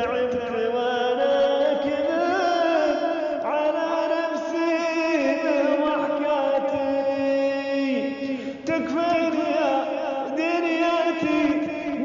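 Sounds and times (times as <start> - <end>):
men chanting wordless long notes: 0.0 - 12.0.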